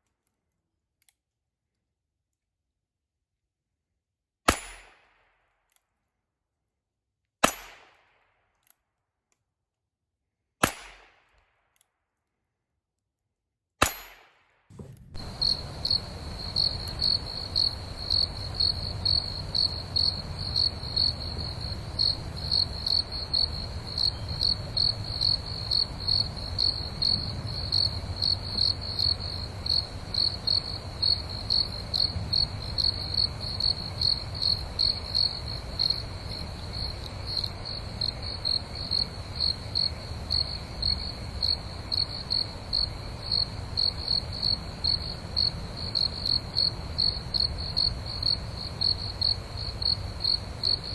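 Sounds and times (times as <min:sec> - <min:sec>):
gunshots: 0:10.6 - 0:11.2, 0:13.8 - 0:16.1
low background rumble: 0:14.7 - 0:22.4.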